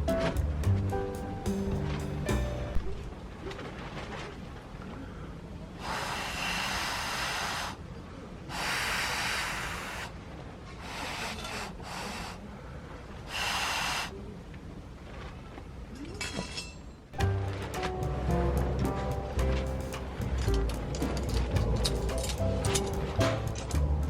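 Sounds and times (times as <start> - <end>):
puffs of blown air: 5.8 - 7.8.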